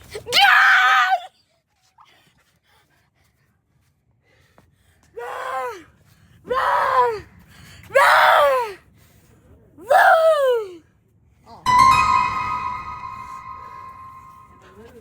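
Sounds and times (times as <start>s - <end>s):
high-pitched drawn-out cries: 11.7s - 14.6s.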